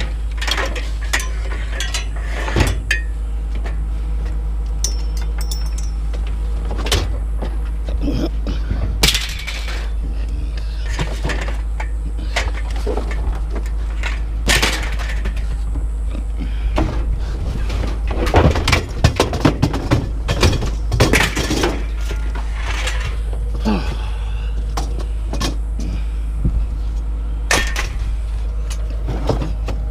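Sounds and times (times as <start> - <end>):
scrap metal clanking and crashing: 0.0 - 3.2, 8.6 - 10.0, 10.8 - 15.6, 16.8 - 23.2, 27.5 - 28.0
low rumble: 3.0 - 29.9.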